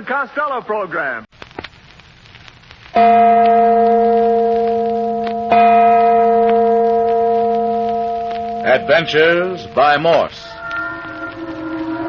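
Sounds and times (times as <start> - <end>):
deep bell ringing: 3.0 - 10.3.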